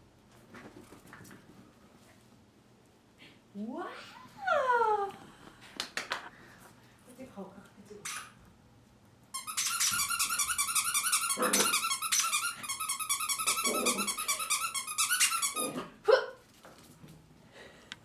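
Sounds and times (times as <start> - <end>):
toy squeaking: 8.0 - 8.4, 9.4 - 15.7
puppy yelp: 9.4 - 16.4
puppy growling: 11.2 - 12.0, 13.4 - 14.5, 15.4 - 16.0.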